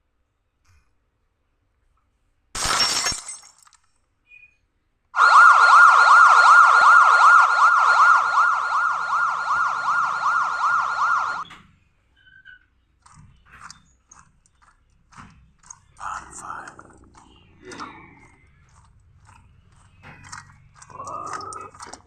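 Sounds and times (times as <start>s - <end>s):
siren rising and falling: 5.2s - 11.5s.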